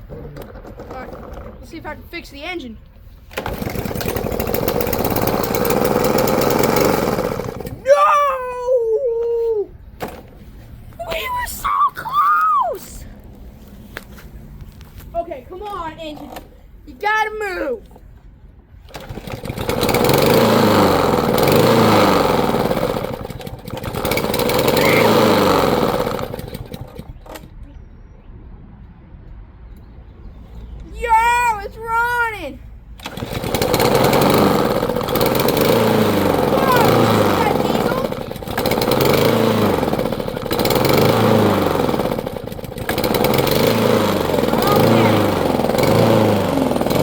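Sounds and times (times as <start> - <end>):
lawn mower engine struggling: 0.0 - 2.2, 3.2 - 8.3, 15.9 - 16.6, 18.8 - 27.5, 33.0 - 47.0.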